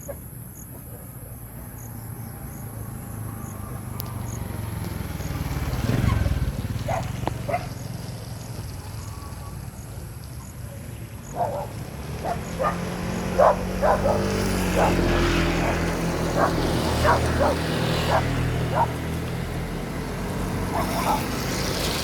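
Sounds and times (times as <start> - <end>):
dog barking: 0.0 - 1.5, 6.1 - 7.8, 11.3 - 19.1, 20.5 - 21.6.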